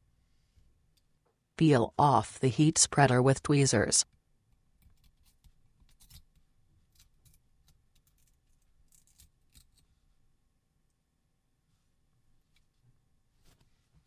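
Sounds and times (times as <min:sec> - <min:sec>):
metal tweezers clicking and scraping: 0:04.8 - 0:09.9.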